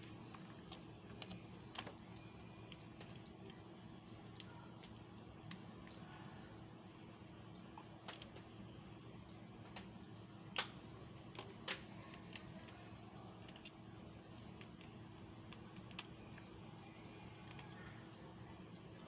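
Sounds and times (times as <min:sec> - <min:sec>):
faint steady hum: 0:00.0 - 0:19.0
small tools clicking and tapping: 0:10.6 - 0:16.6.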